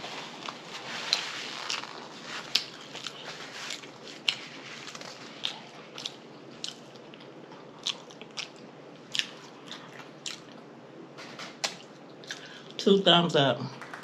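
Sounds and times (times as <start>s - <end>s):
chewing and lip smacking: 0.4s - 10.7s.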